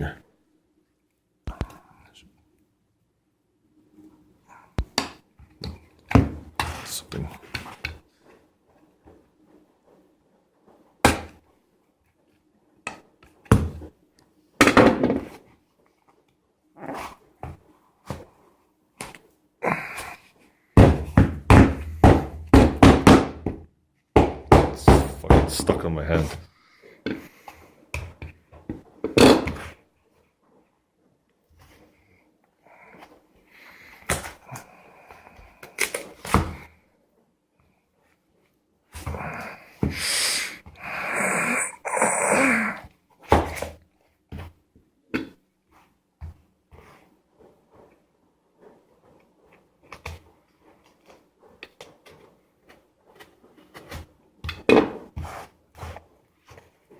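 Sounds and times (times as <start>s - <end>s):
heavy thumps: 20.8s - 25.9s.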